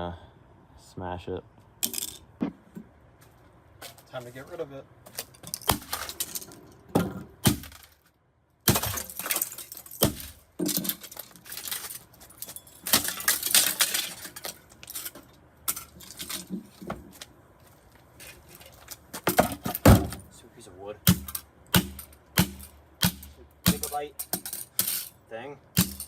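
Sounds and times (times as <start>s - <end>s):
pieces cracking and clinking: 8.7s - 16.7s.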